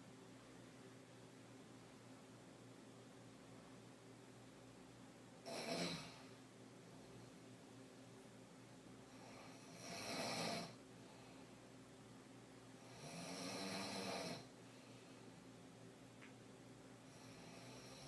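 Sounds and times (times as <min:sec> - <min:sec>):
woman snoring: 0:05.4 - 0:06.3, 0:09.1 - 0:10.8, 0:12.8 - 0:14.5, 0:17.1 - 0:18.0.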